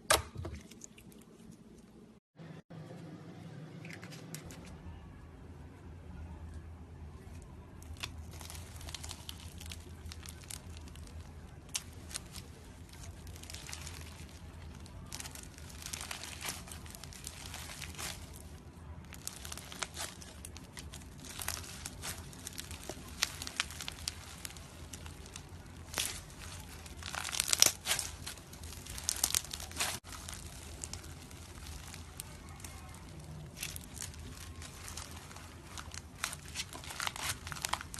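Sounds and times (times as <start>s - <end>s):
faint low hum: 0.5s - 37.9s
slime crackling and popping: 7.5s - 37.9s.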